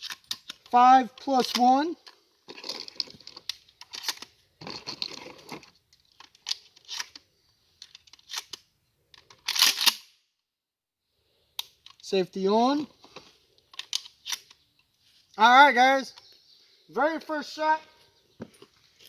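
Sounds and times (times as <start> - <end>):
shotgun shells clicking and rattling: 0.0 - 7.2, 7.8 - 10.0, 11.6 - 12.1, 13.6 - 14.6.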